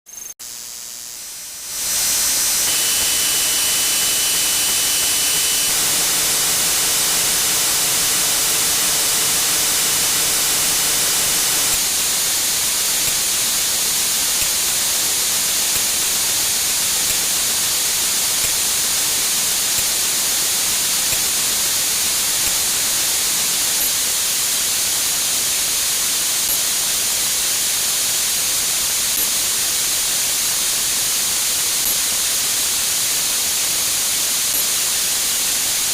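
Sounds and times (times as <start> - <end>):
dense static-like hiss: 0.8 - 35.9.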